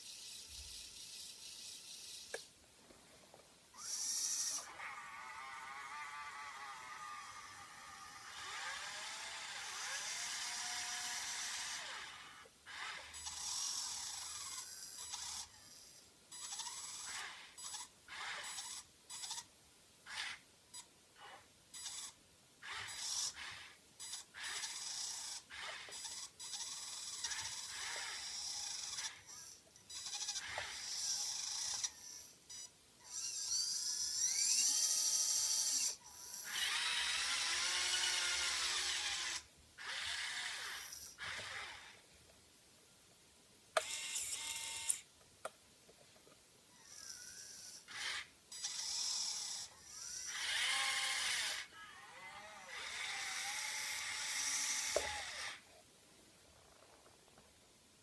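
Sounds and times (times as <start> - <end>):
small electric motors whining: 0.0 - 2.5, 3.8 - 19.5, 20.1 - 42.0, 43.8 - 45.1, 46.8 - 55.7.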